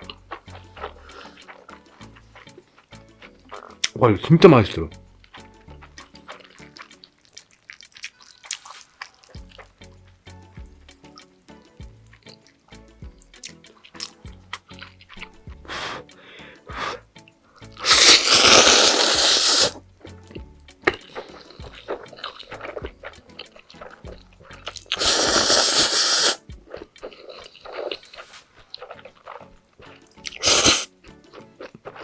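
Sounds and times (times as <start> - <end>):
slurping noodles: 0.0 - 4.0, 14.8 - 17.1, 17.7 - 19.8, 20.9 - 32.0
wet chewing and mouth clicks: 0.0 - 4.0, 4.9 - 32.0.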